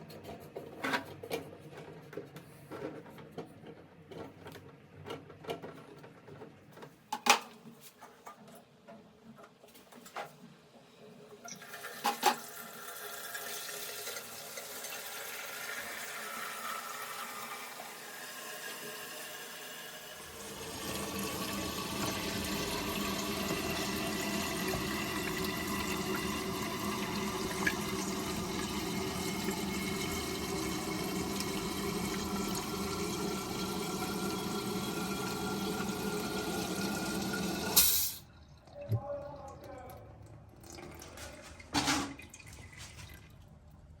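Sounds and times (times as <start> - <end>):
water filling toilet cistern: 11.4 - 43.5.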